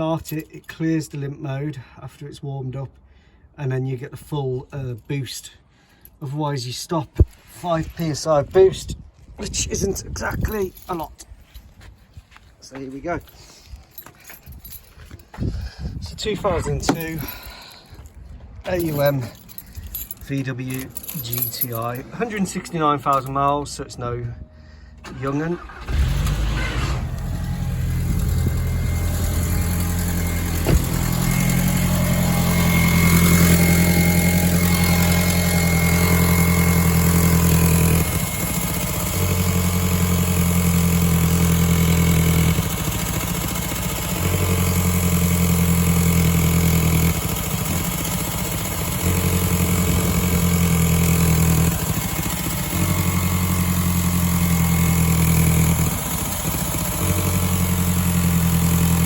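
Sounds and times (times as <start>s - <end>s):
car engine idling and stumbling: 10.3s - 59.0s.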